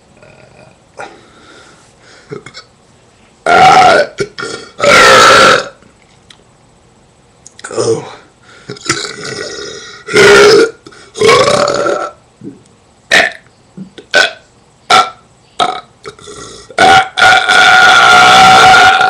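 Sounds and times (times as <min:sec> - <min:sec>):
person burping: 0:00.2 - 0:01.2, 0:02.3 - 0:02.7, 0:03.5 - 0:05.8, 0:07.7 - 0:19.0.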